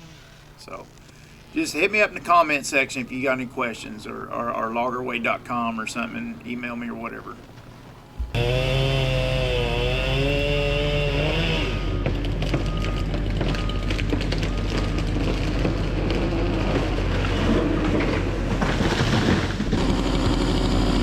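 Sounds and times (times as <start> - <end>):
logging machinery engine drone: 7.6 - 21.0.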